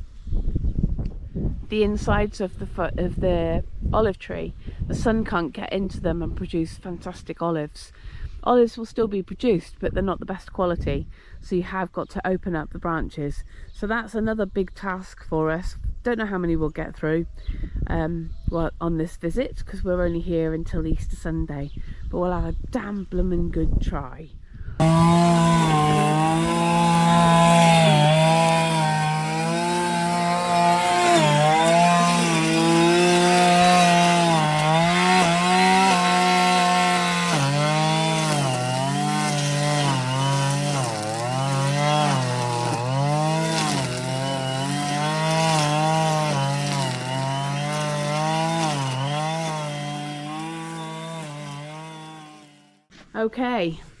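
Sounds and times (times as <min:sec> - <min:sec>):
strimmer engine at high revs: 0:24.8 - 0:52.8.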